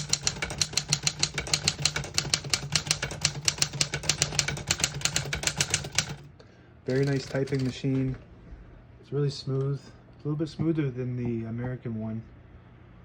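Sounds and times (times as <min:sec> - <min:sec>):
manual typewriter typing: 0:00.0 - 0:06.3, 0:06.9 - 0:08.2.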